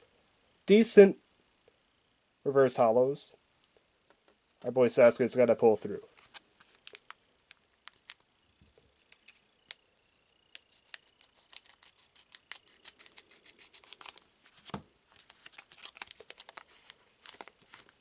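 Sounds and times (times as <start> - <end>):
scissors snipping foil: 10.4 - 14.2.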